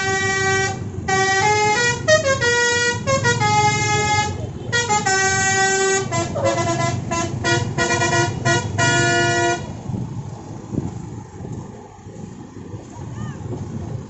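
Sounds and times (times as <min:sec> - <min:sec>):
bus horn playing a tune: 0:00.0 - 0:09.9
bus engine: 0:00.0 - 0:14.0
road noise: 0:00.0 - 0:14.0.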